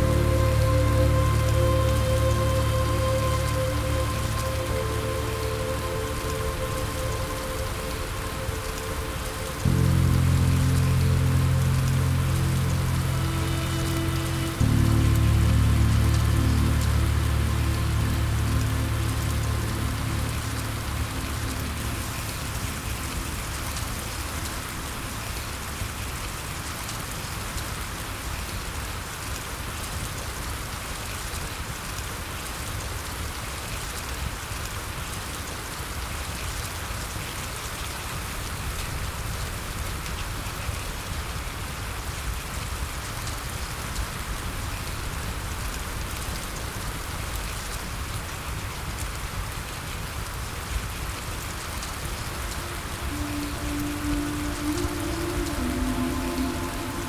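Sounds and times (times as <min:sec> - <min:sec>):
soft music tones: 0:00.0 - 0:26.6, 0:49.9 - 0:57.0
rain pattering on a surface: 0:00.0 - 0:57.0.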